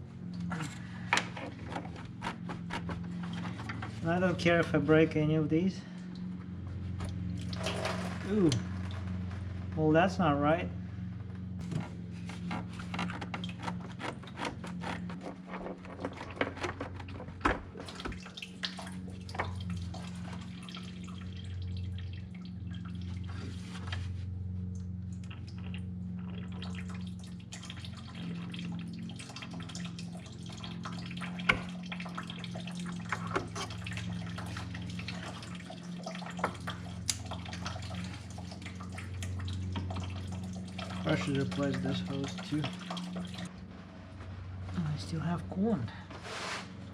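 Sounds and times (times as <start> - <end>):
low hum: 0.0 - 46.9
coolant dripping from hose: 5.8 - 9.3, 11.6 - 43.5.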